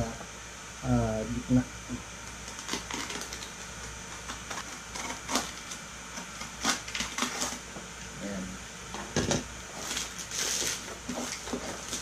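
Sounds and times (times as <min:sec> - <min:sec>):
utility knife cutting plastic wrap: 0:02.4 - 0:03.5, 0:04.2 - 0:07.6
plastic crinkling: 0:02.4 - 0:05.8, 0:09.7 - 0:12.0.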